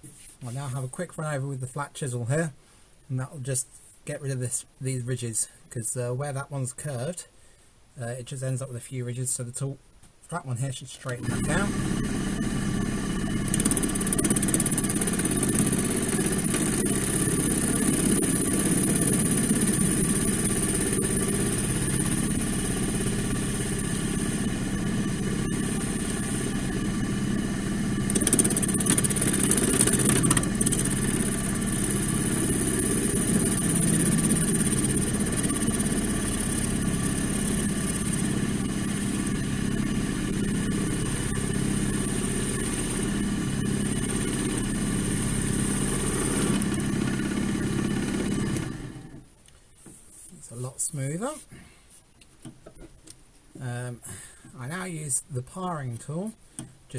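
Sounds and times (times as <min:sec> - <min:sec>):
chisel shaving spinning wood: 0:11.2 - 0:49.2
wood lathe running: 0:11.2 - 0:49.2.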